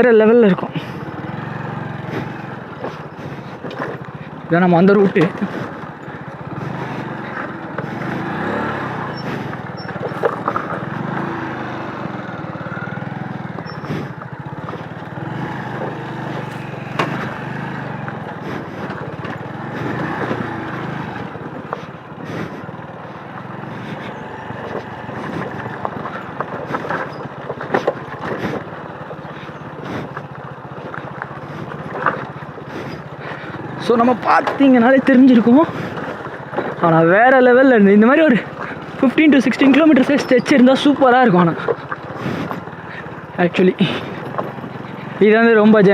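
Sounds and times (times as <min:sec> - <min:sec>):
small motorcycle engine: 0:00.0 - 0:45.9
knocks and rattles: 0:13.5 - 0:22.3, 0:23.0 - 0:37.1.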